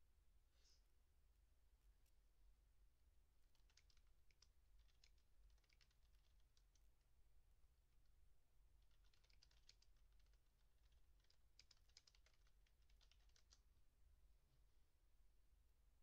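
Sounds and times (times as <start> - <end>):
keyboard typing: 3.5 - 6.8, 8.8 - 13.7.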